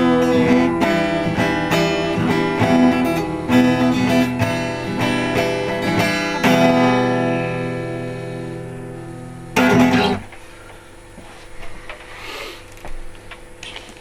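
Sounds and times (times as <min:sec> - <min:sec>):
acoustic guitar strumming: 0:00.0 - 0:10.6.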